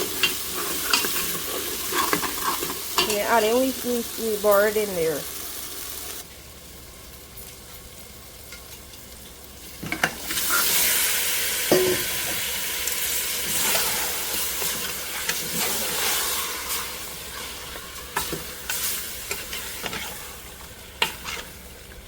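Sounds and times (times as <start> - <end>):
spoon scraping a pot: 0.0 - 3.2, 13.4 - 21.6
meat sizzling in hot oil: 0.0 - 22.0.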